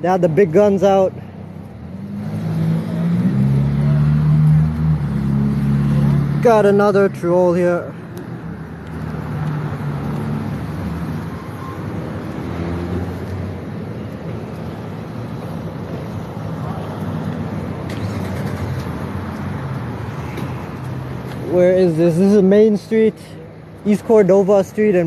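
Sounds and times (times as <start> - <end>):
street traffic hum: 0.0 - 25.0.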